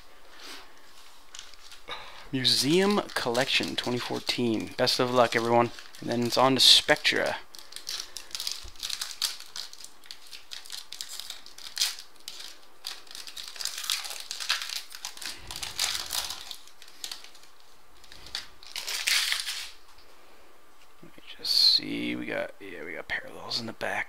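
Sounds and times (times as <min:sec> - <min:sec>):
wrapper tearing and crinkling: 0:01.2 - 0:19.8.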